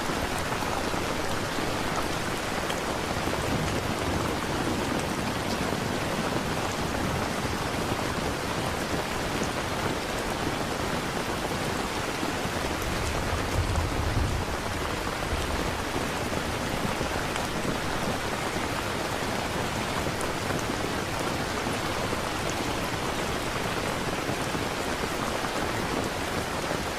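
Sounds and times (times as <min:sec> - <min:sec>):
heavy rain: 0:00.0 - 0:26.9
thunder rumbling: 0:12.8 - 0:17.1.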